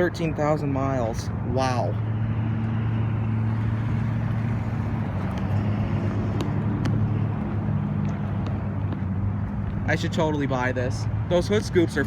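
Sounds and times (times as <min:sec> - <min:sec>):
car engine humming: 0:01.3 - 0:10.4.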